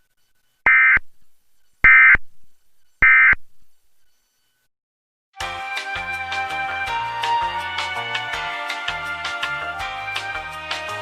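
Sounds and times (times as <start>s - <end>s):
digital data tone bursts: 0.7s - 1.1s, 1.8s - 2.2s, 3.0s - 3.4s.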